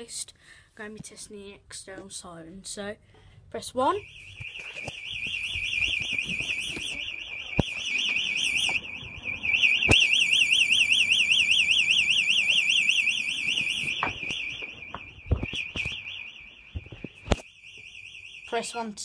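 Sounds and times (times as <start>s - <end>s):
warbling alarm siren: 3.9s - 19.0s.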